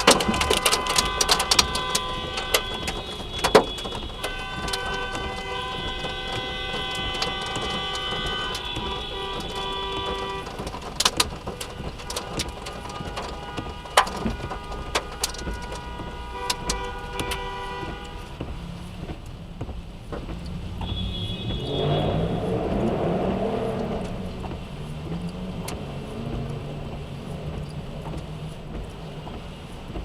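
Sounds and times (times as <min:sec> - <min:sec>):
hail knocking on car: 0:00.0 - 0:22.1
car engine: 0:00.0 - 0:30.0
rushing noise: 0:20.5 - 0:29.8.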